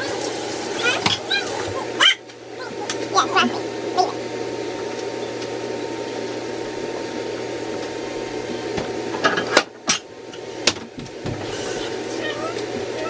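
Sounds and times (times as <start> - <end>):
appliance humming and hissing: 0.0 - 13.0.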